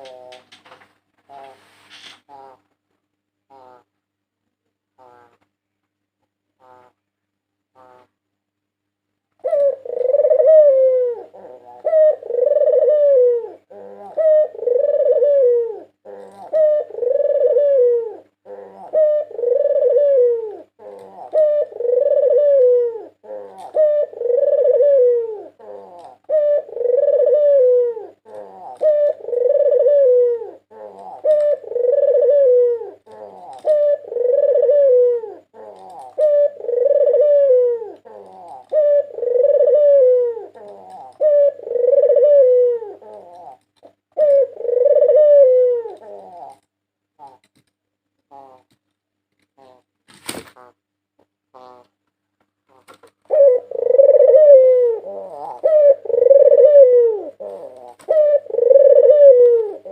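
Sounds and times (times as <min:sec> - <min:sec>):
dove cooing: 0:00.0 - 0:00.6, 0:09.4 - 0:47.6, 0:48.3 - 0:48.8, 0:49.6 - 0:49.9, 0:51.5 - 0:51.9, 0:52.7 - 0:59.9.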